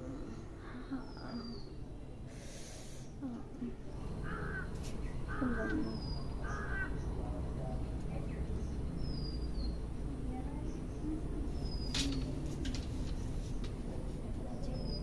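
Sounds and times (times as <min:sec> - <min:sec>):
crow cawing: 0:04.2 - 0:07.1.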